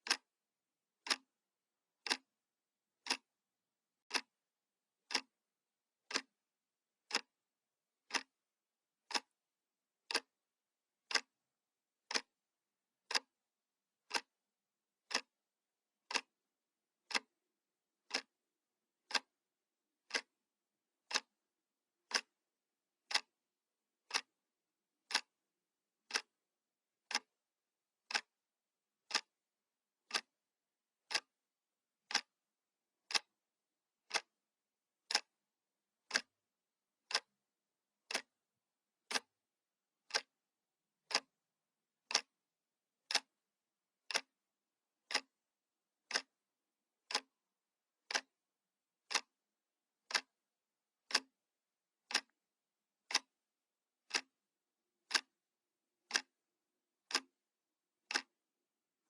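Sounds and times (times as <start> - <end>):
analog clock ticking: 1.0 - 1.2, 2.0 - 2.3, 3.0 - 3.2, 4.1 - 4.3, 5.1 - 5.3, 6.1 - 6.3, 8.1 - 8.3, 9.1 - 9.3, 11.1 - 11.3, 12.1 - 12.3, 15.1 - 15.3, 16.1 - 16.3, 17.1 - 17.3, 18.1 - 18.3, 19.1 - 19.3, 20.1 - 20.3, 21.1 - 21.3, 22.1 - 22.3, 23.1 - 23.3, 25.1 - 25.3, 26.1 - 26.3, 27.1 - 27.3, 28.1 - 28.3, 29.1 - 29.3, 30.1 - 30.3, 31.1 - 31.3, 32.1 - 32.3, 33.1 - 33.3, 34.1 - 34.3, 35.1 - 35.3, 36.1 - 36.3, 37.1 - 37.3, 39.1 - 39.3, 41.1 - 41.3, 42.1 - 42.3, 43.1 - 43.3, 44.1 - 44.3, 45.1 - 45.3, 46.1 - 46.3, 47.1 - 47.3, 48.1 - 48.3, 49.1 - 49.3, 50.1 - 50.3, 51.1 - 51.3, 52.1 - 52.3, 53.1 - 53.3, 54.1 - 54.3, 55.1 - 55.3, 56.1 - 56.3.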